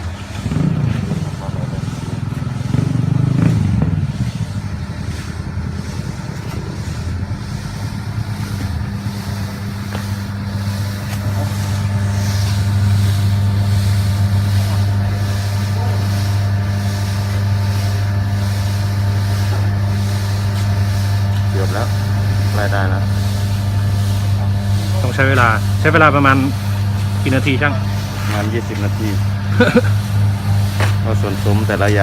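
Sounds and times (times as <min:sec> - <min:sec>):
mixer machine humming: 0:00.0 - 0:32.0.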